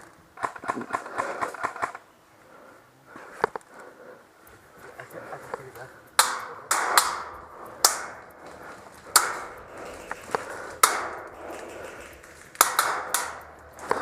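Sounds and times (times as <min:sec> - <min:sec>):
airsoft gun shots: 0:06.2 - 0:08.2, 0:12.6 - 0:13.4.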